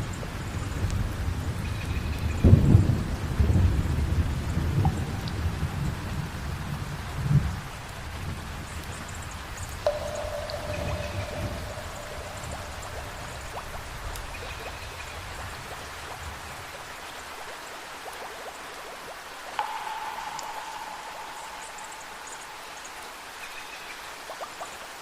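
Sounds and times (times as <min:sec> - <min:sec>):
heavy rain: 0:00.0 - 0:25.0
thunder rumble: 0:09.9 - 0:16.6.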